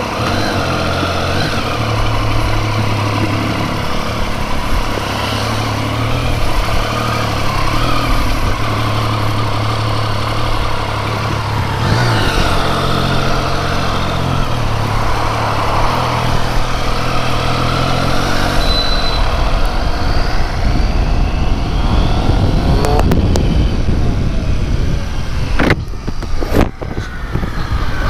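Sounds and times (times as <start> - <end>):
motorcycle engine running: 0.0 - 28.0
rush of noise: 0.0 - 28.0.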